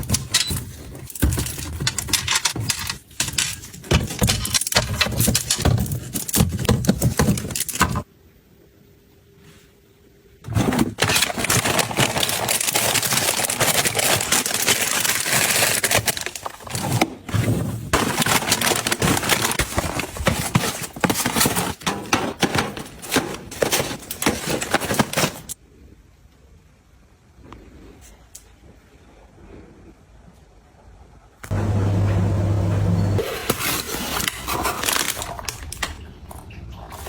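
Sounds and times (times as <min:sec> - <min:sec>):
objects crackling and rustling: 0:00.0 - 0:08.1, 0:10.4 - 0:25.6, 0:33.2 - 0:37.0.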